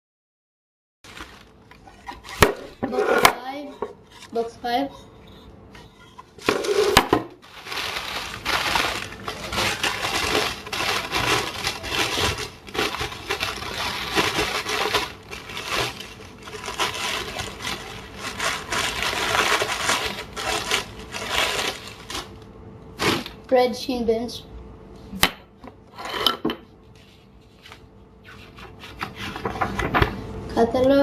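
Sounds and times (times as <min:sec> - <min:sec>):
cardboard rustling and crinkling: 0:01.1 - 0:03.0, 0:06.3 - 0:22.3.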